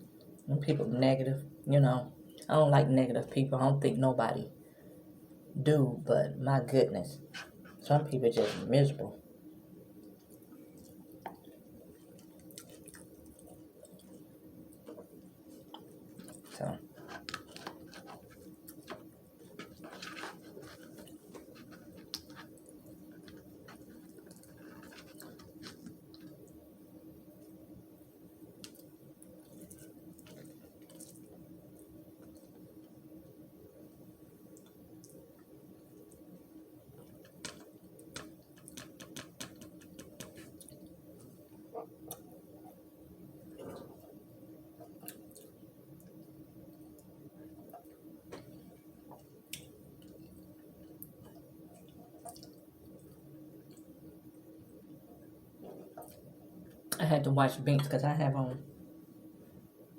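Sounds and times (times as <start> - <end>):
steady low hum: 0.0 - 59.9
wet chewing and lip-smacking: 10.0 - 26.6, 28.6 - 33.0, 34.4 - 42.6, 44.8 - 54.0.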